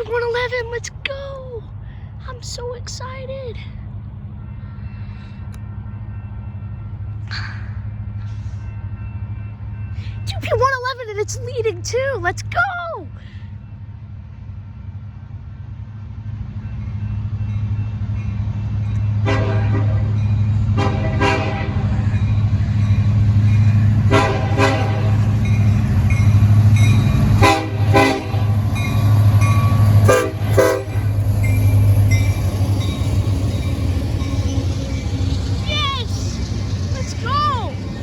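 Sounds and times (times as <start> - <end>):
locomotive air horn blasts: 19.2 - 21.9, 24.1 - 25.3, 27.4 - 28.8, 30.0 - 31.1
diesel engine drone: 20.4 - 38.0.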